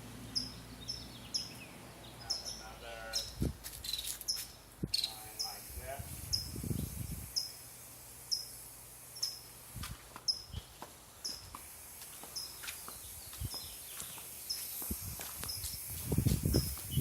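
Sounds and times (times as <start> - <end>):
high-pitched chirping: 0.3 - 7.6, 8.3 - 8.6, 9.2 - 9.5.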